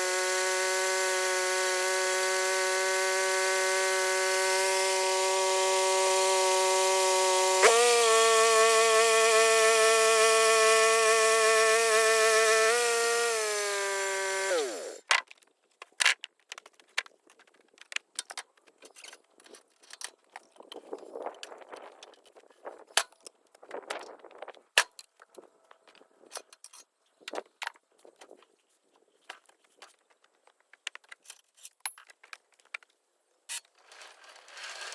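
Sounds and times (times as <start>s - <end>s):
bandsaw mill whining: 0.0s - 15.0s.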